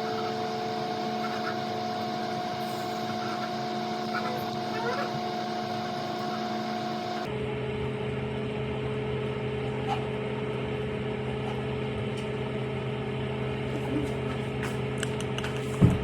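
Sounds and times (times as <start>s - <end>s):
microwave oven humming: 0.0s - 16.0s.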